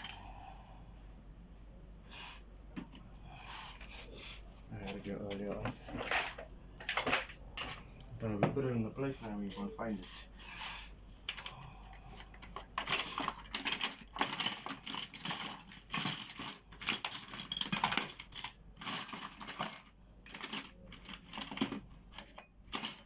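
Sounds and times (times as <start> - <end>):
small parts and hand tools clinking: 0.0 - 0.4, 4.8 - 7.9, 11.2 - 23.0.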